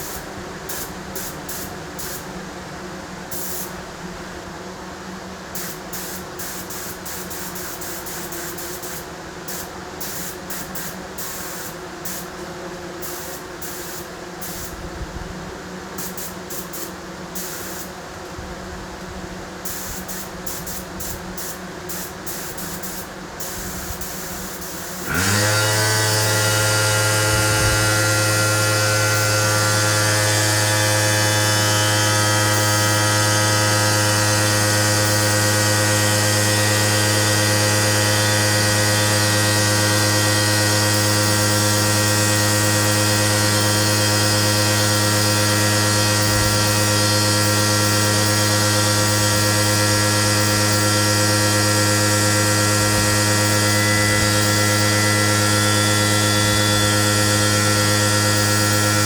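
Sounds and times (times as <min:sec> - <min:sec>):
air compressor motor humming: 0:00.0 - 0:02.6, 0:05.0 - 0:59.0
spray gun hissing in bursts: 0:00.0 - 0:02.6, 0:03.2 - 0:59.0.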